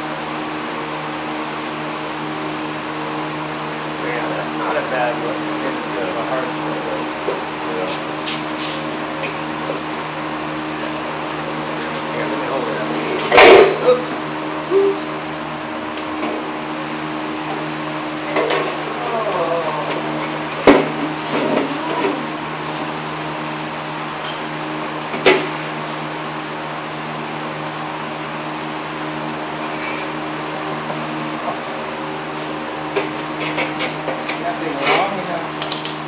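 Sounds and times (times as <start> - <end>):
steady machine hum: 0.0 - 36.0.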